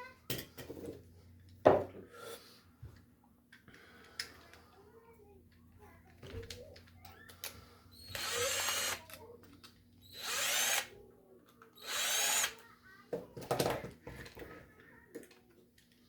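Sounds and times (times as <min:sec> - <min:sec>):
power drill bursts: 0:07.9 - 0:09.1, 0:10.0 - 0:10.9, 0:11.8 - 0:12.6.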